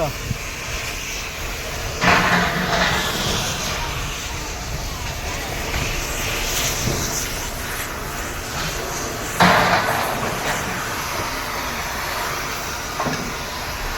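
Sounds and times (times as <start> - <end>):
clattery workshop noise: 0.0 - 13.9
loud metal strike: 2.0 - 12.4.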